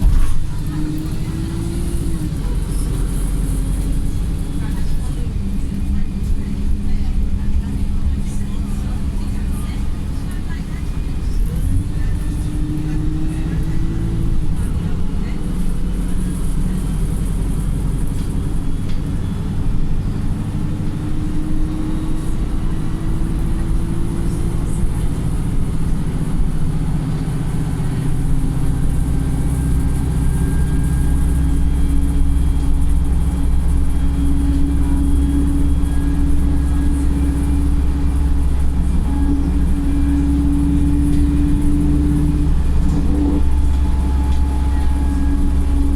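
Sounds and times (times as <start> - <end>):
bus engine drone: 0.0 - 45.9
road rumble: 0.0 - 45.9
low steady whine: 28.8 - 45.9.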